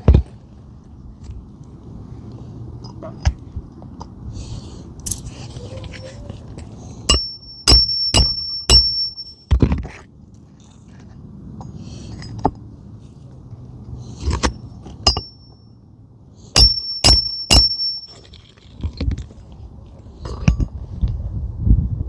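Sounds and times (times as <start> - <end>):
hammer striking nails: 7.1 - 9.3, 15.1 - 15.4, 16.6 - 18.1.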